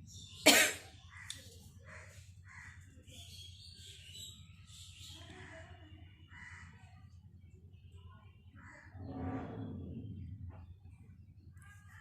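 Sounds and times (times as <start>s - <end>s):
low steady hum: 7.8s - 11.6s.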